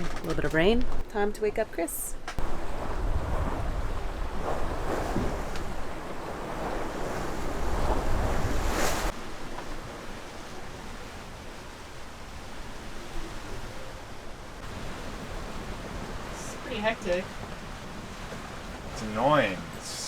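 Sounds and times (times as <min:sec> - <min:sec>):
wind buffeting microphone: 0:02.4 - 0:09.1
wind and sea rushing: 0:02.4 - 0:20.0.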